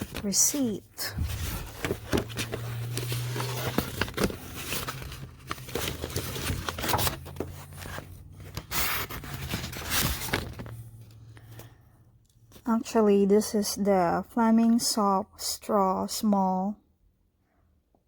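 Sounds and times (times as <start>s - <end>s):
paper packaging rustling: 0.0s - 11.1s.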